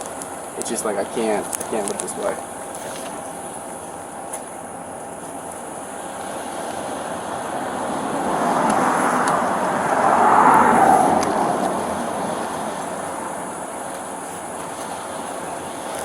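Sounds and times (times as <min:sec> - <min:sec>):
vehicle passing by: 0:06.6 - 0:14.0.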